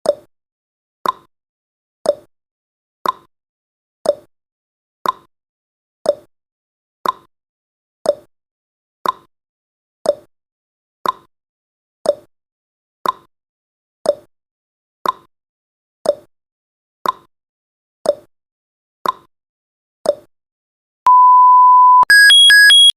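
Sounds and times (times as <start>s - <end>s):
steady beep: 21.1s - 22.9s.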